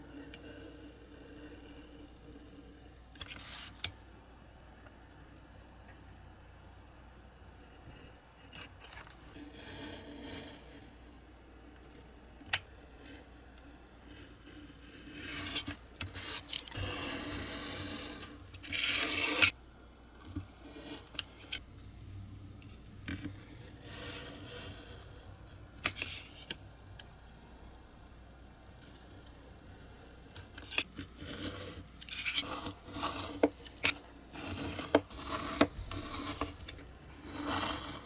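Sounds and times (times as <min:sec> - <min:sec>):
hand tool scraping: 0:31.0 - 0:38.0.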